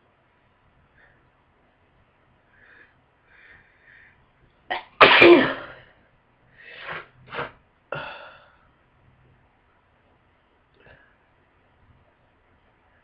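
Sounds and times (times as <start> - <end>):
person sneezing: 4.7 - 5.8.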